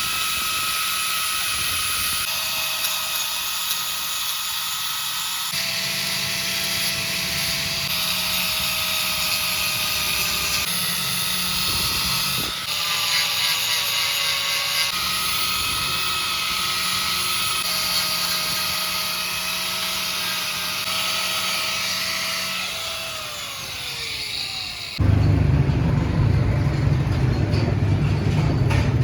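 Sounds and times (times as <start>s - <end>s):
power tool whining: 0.0s - 25.6s
loud low rumble: 25.0s - 29.0s.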